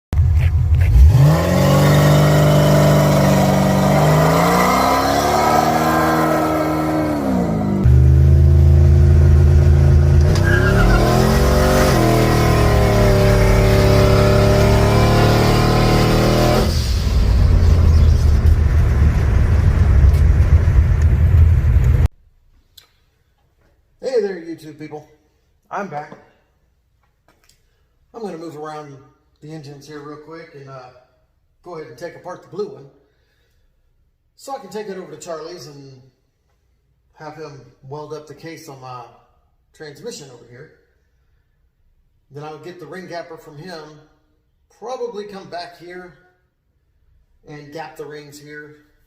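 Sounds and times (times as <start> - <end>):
car engine accelerating: 0.2 - 22.1.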